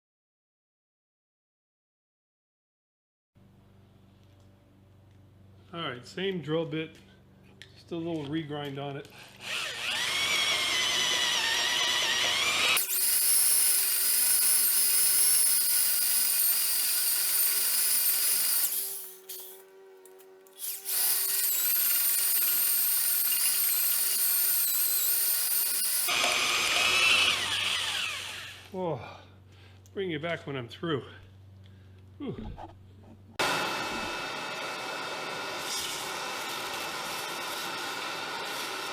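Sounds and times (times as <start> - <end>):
electric drill motor whining: 9.2 - 28.7, 33.4 - 38.9
drill bit squealing on steel: 9.6 - 28.2.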